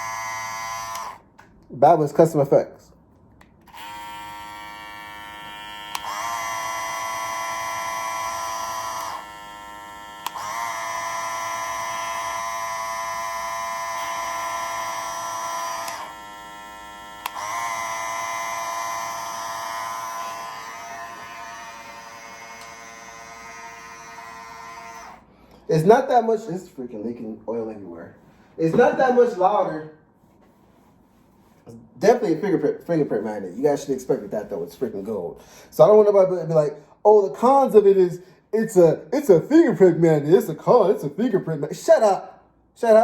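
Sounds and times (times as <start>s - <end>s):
hair clippers buzzing quietly: 0.0s - 1.2s, 3.7s - 25.2s
loud hair clippers buzzing: 0.0s - 1.2s, 3.7s - 25.2s.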